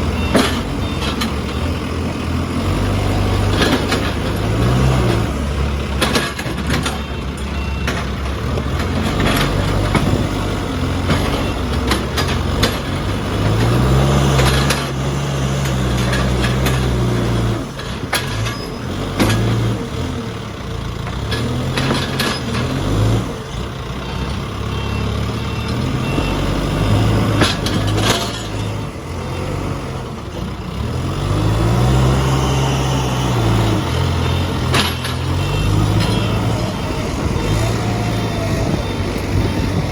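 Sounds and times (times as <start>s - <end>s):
diesel engine revving: 0.0s - 39.9s
sharp metal clanks: 27.2s - 28.8s, 33.4s - 37.2s.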